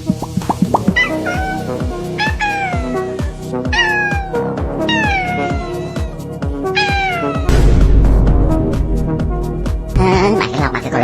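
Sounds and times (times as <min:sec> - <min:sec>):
music with kick-drum beat: 0:00.0 - 0:10.4
cat meowing: 0:01.0 - 0:07.5.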